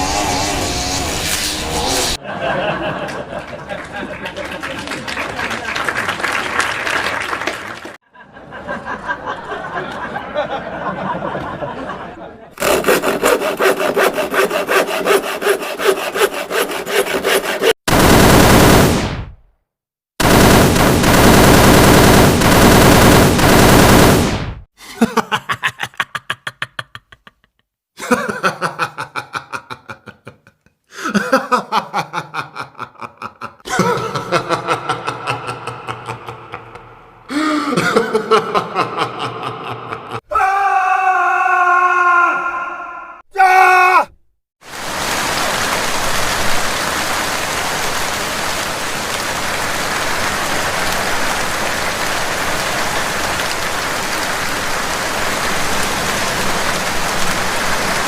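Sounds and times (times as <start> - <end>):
rapid repeated strikes: 12.6 - 19.4, 20.2 - 24.7
harsh noisy blasts: 17.9 - 19.4, 20.2 - 24.7.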